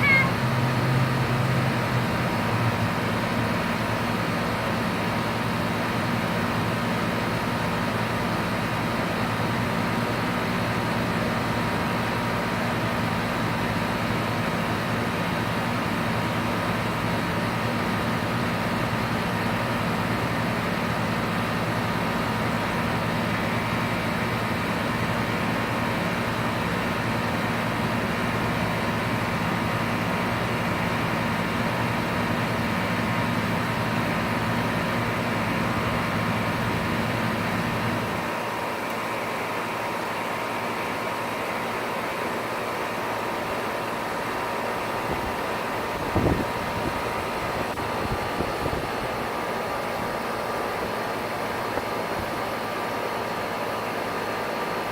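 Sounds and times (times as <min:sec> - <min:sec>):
air conditioner unit humming: 0:14.1 - 0:54.9.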